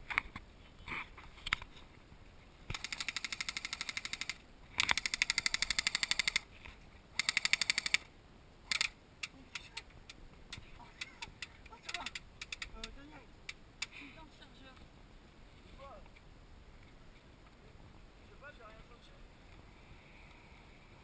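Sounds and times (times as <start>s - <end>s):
airsoft gun full auto bursts: 2.7s - 6.4s, 7.2s - 8.1s.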